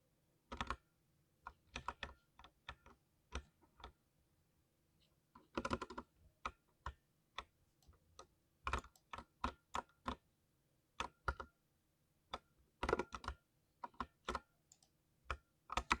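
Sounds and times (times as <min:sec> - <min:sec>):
mechanical keyboard typing: 0:05.5 - 0:06.1, 0:12.8 - 0:16.0.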